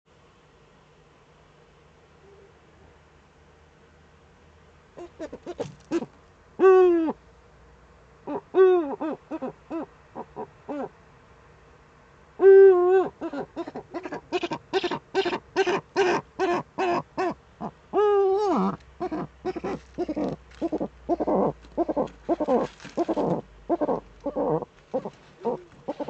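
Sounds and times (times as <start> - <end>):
owl hooting: 5.0 - 7.2, 8.2 - 11.0, 12.4 - 26.0.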